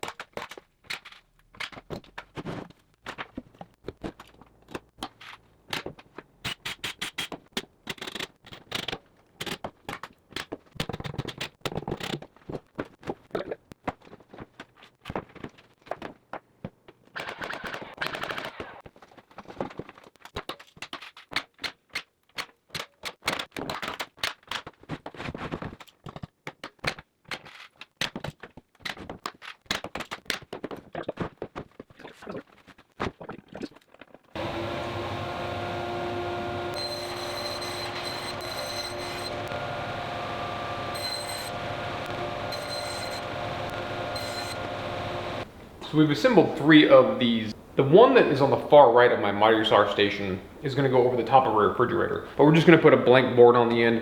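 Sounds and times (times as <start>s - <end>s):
power tool running: 34.4s - 45.6s.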